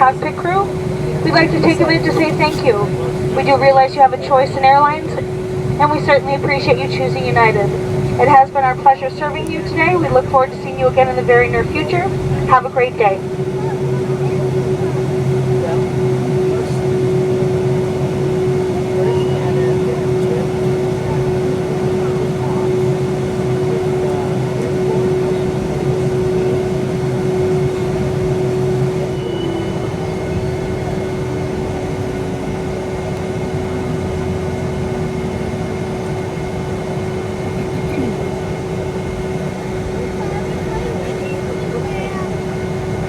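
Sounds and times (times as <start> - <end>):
aircraft cabin hum and rush: 0.0 - 43.0.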